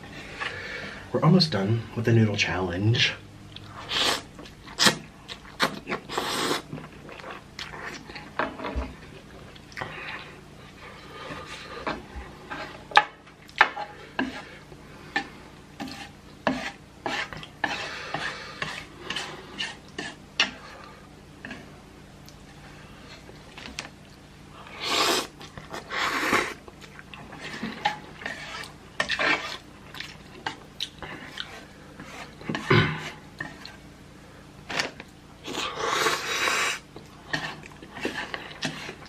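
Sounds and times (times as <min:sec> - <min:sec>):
slurping noodles: 0:03.7 - 0:06.7, 0:24.7 - 0:26.6, 0:35.4 - 0:36.8
fork scraping a bowl: 0:11.0 - 0:14.5, 0:15.2 - 0:20.6, 0:27.2 - 0:29.6, 0:30.4 - 0:33.8, 0:35.5 - 0:39.0.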